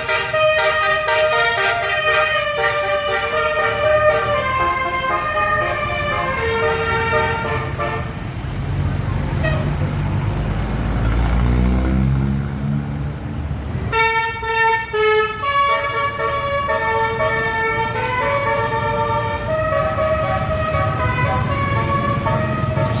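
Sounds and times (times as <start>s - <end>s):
bus musical horn: 0.0s - 8.4s, 9.3s - 9.8s, 13.9s - 23.0s
bus engine rumbling: 0.0s - 23.0s.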